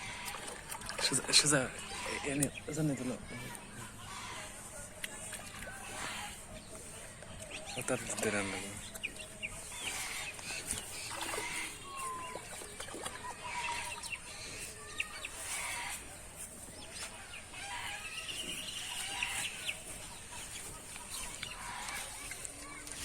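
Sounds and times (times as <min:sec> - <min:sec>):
bird chirps and clucks: 0:00.0 - 0:23.0.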